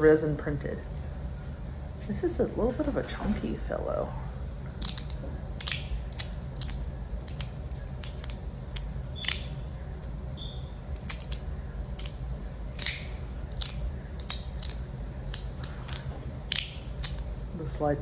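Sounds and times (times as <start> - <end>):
low steady hum: 0.0 - 18.0
fidget slider plates clicking: 4.8 - 9.6, 11.0 - 11.4, 12.0 - 12.2, 12.8 - 17.2.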